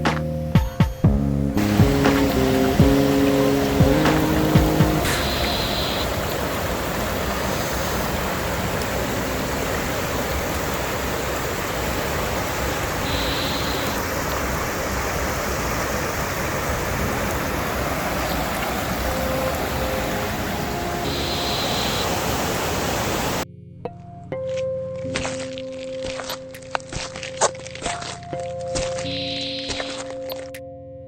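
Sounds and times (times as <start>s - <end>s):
waterfall roar: 1.6s - 23.4s.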